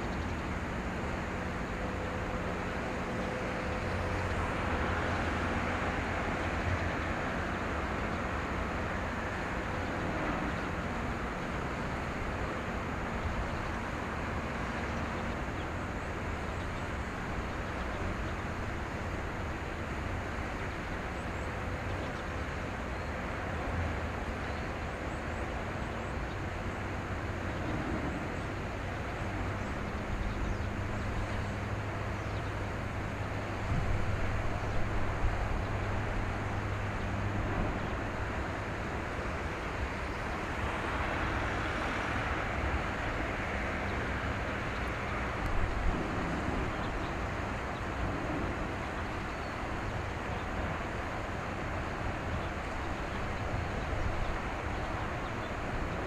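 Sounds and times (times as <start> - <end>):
low engine drone: 0.0 - 56.0
road traffic: 0.0 - 56.0
wind noise: 32.9 - 56.0.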